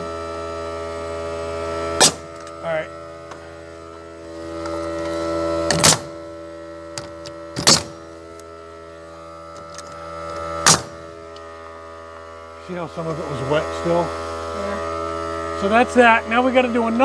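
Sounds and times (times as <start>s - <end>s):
motor hum: 0.0s - 17.0s
nail gun shots: 2.0s - 2.6s, 5.7s - 6.3s, 7.0s - 8.2s, 10.6s - 11.2s.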